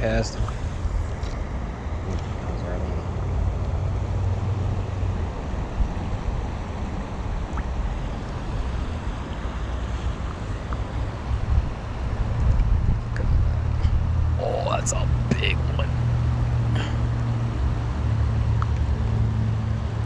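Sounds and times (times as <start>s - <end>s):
wind buffeting microphone: 0.0s - 15.5s.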